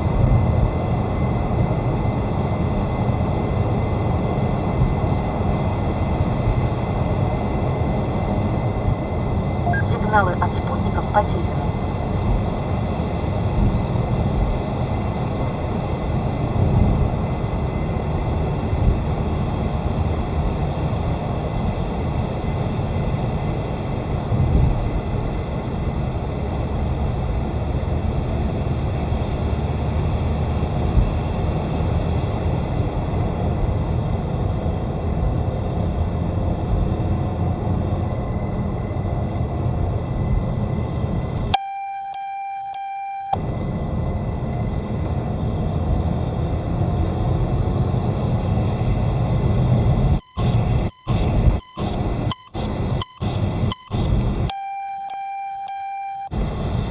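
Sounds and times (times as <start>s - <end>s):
car road and engine noise: 0.0s - 56.9s
steady beep-like tone: 9.6s - 11.8s, 41.5s - 43.4s, 50.1s - 56.3s.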